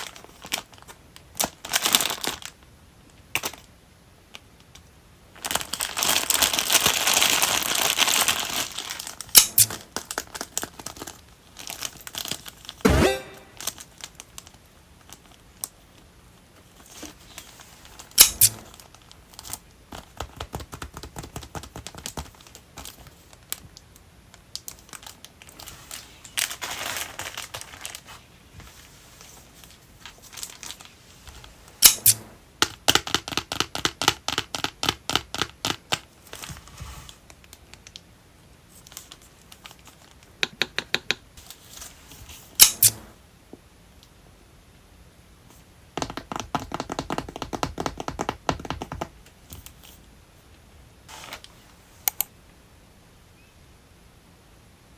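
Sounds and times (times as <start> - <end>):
packaging crinkling and tearing: 0.0 - 2.6, 5.4 - 12.8, 24.6 - 28.2, 29.6 - 31.0.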